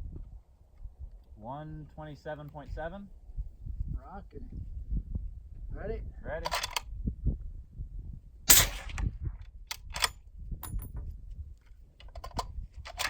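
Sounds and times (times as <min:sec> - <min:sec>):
suppressed rifle shot with echo: 0:08.5 - 0:09.4.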